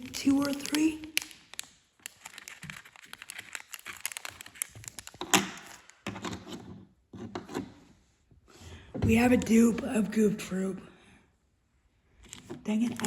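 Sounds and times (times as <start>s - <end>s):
packaging rustling and crinkling: 0.0s - 6.0s.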